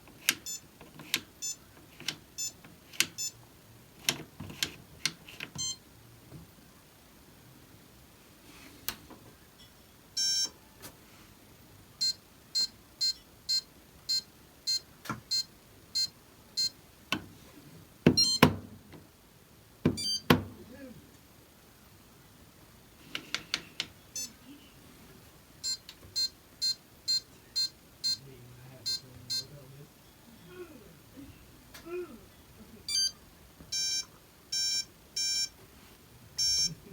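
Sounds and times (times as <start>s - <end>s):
control panel beeping: 0.2s - 3.4s, 5.5s - 5.8s, 10.2s - 10.6s, 12.0s - 16.8s, 18.2s - 18.6s, 19.9s - 20.4s, 23.4s - 24.4s, 25.6s - 29.6s, 32.9s - 35.6s, 36.4s - 36.8s.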